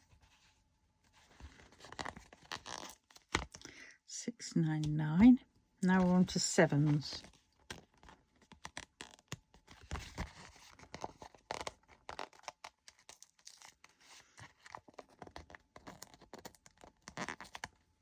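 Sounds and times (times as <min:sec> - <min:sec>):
plastic peeling or tearing: 0:01.6 - 0:03.6, 0:10.7 - 0:13.9.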